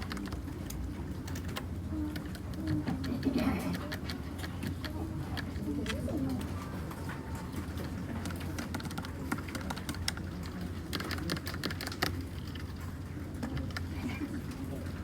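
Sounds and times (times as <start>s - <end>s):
mechanical keyboard typing: 0.0s - 6.0s, 8.2s - 12.8s.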